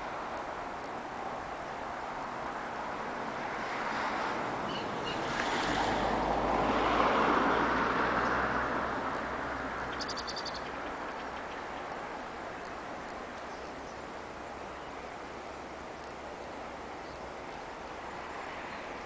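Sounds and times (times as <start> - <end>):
bird chirps: 9.9 - 11.9.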